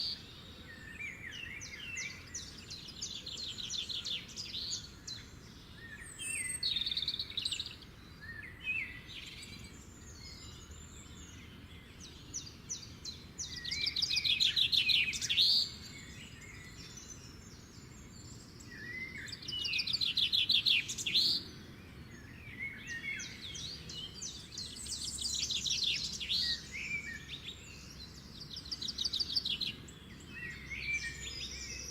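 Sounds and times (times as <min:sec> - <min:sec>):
songbirds trilling and chirping: 0:00.0 - 0:31.9.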